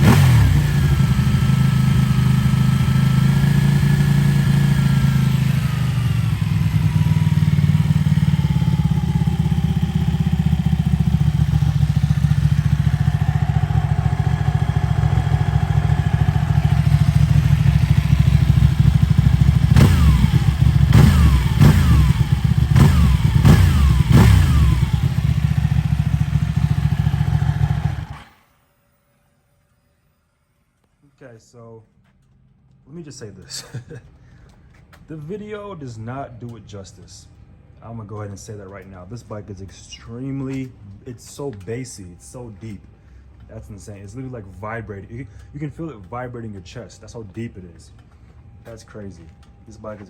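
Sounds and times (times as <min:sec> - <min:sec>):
motorcycle engine idling and revving: 0:00.0 - 0:28.5.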